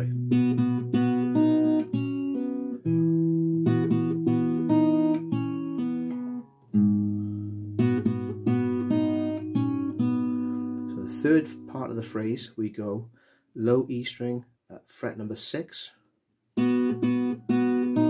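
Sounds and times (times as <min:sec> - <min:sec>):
fingerstyle acoustic guitar: 0:00.0 - 0:12.0, 0:16.6 - 0:18.0.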